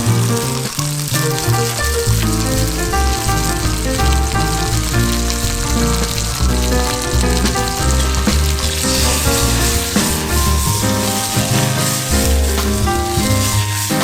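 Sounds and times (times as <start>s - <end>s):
background music with bass: 0.0s - 14.0s
food sizzling in a pan: 0.0s - 14.0s.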